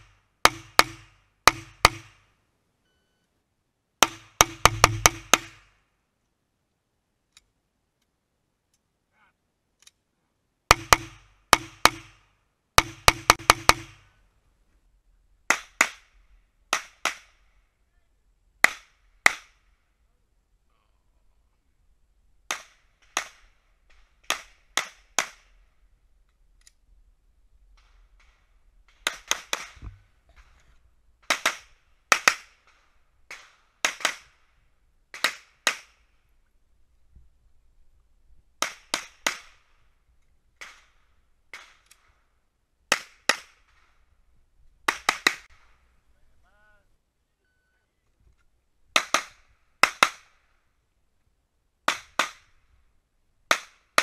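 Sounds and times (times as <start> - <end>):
pistol shots: 31.2 - 34.4.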